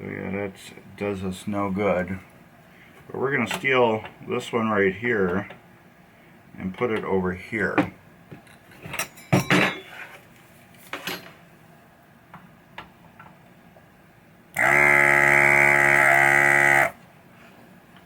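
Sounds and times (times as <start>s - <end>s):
desoldering pump buzzing: 14.5s - 17.0s.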